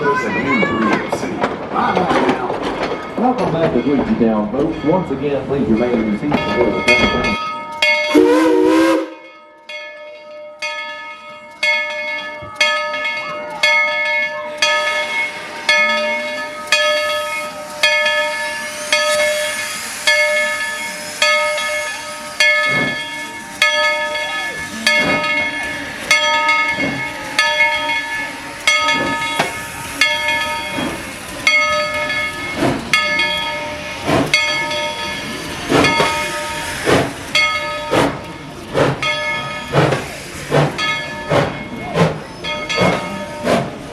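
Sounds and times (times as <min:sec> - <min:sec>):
locomotive bell ringing: 0:02.8 - 0:43.9
hissing steam: 0:14.8 - 0:43.9.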